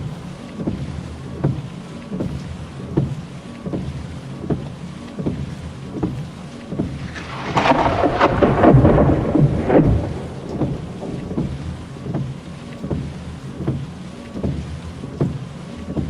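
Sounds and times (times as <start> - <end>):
rain pattering on car body: 0.0 - 16.0
heavy raindrops ticking: 4.1 - 16.0
thunder clap rumbling: 7.0 - 12.5.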